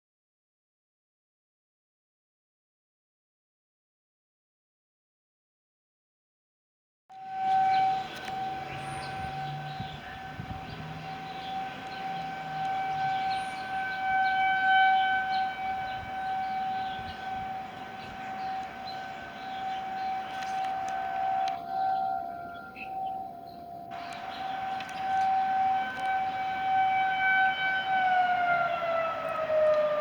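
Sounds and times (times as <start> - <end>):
tornado siren wailing: 7.1 - 30.0.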